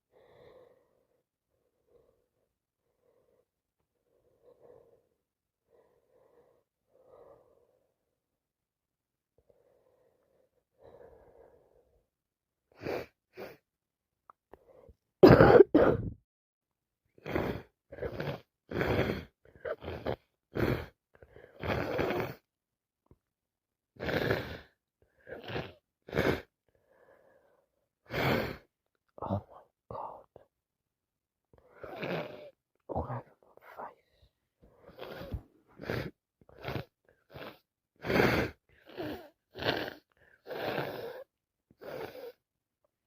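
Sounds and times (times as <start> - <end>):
faint breaths: 0.1 - 8.2
woman coughing: 15.2 - 16.2.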